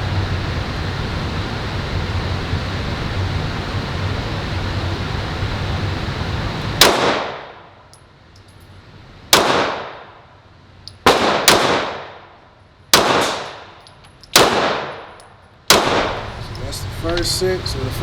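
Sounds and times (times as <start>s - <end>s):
steady hiss: 0.0s - 18.0s
handgun shots with echo: 6.8s - 7.6s, 9.3s - 10.1s, 11.0s - 12.2s, 12.9s - 16.2s.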